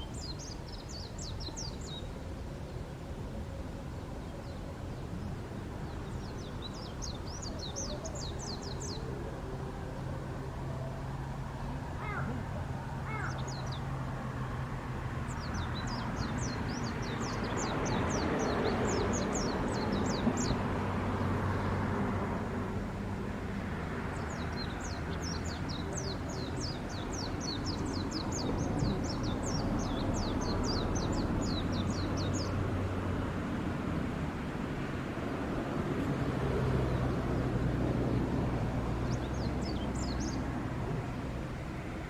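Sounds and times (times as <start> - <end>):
bird chirping: 4.3 - 9.1.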